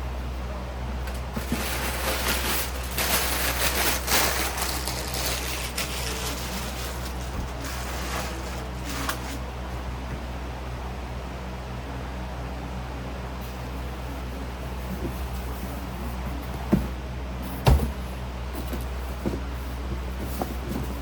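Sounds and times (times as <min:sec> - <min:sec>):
steady low hum: 0:00.0 - 0:21.0
paper and cardboard rustling: 0:01.3 - 0:09.4.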